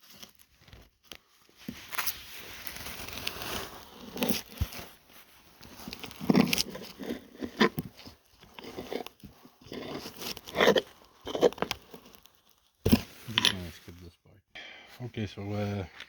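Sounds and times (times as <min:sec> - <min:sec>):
scraping and scratching sawdust: 0:01.7 - 0:14.0.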